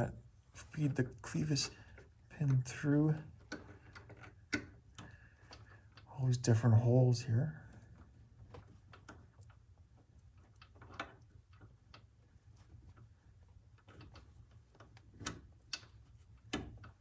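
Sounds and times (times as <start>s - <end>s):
metal clicks and taps: 3.4s - 6.1s, 8.5s - 13.1s.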